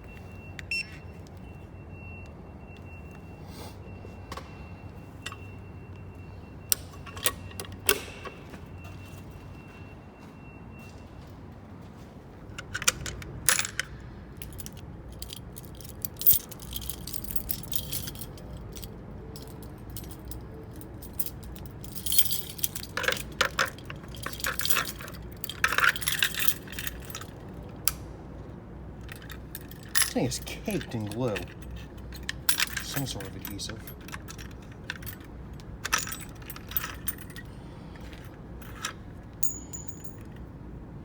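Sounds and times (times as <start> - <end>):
keys jangling: 12.6 - 28.0, 29.0 - 40.5.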